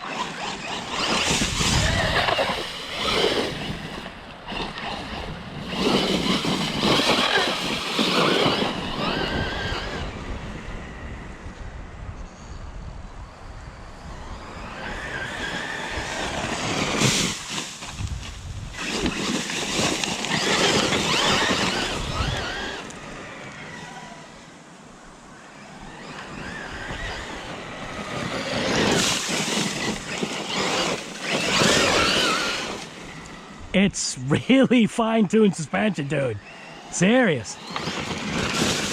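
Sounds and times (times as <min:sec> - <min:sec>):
tyres scrabbling over dirt: 0:00.0 - 0:09.9, 0:15.1 - 0:23.6, 0:25.9 - 0:33.5, 0:35.7 - 0:38.9
electric motor and gear whine: 0:00.0 - 0:38.9.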